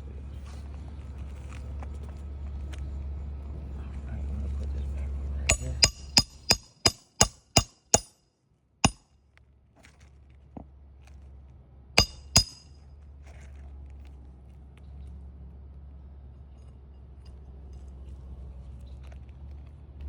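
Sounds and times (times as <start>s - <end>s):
hammer blows with metallic ring: 5.5s - 8.2s, 12.0s - 12.7s.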